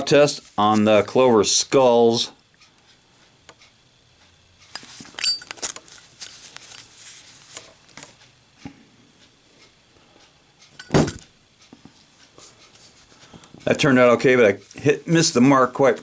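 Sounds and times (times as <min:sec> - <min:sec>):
metal lighters clinking: 0:04.8 - 0:05.8.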